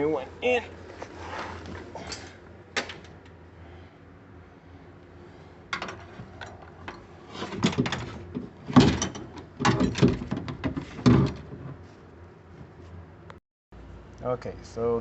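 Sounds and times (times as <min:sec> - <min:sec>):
car door parts clicking and rattling: 0:05.8 - 0:11.6.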